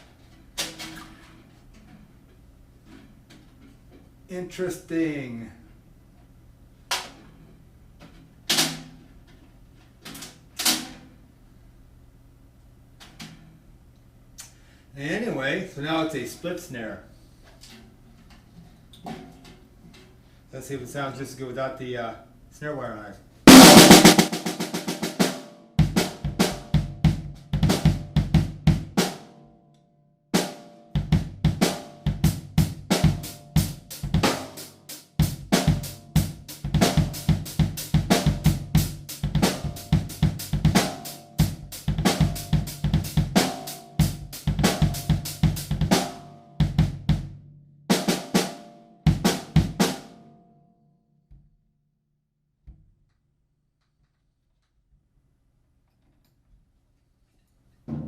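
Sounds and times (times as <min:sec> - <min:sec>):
bass drum hits: 0:23.5 - 0:24.6
snare drum hits: 0:23.5 - 0:26.7.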